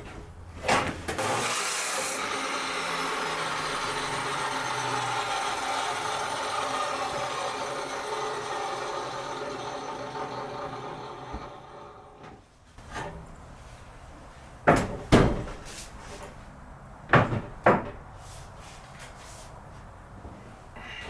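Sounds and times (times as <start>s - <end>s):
machine hum: 2.2s - 12.4s
sharp knocks: 14.6s - 15.6s, 17.1s - 18.1s.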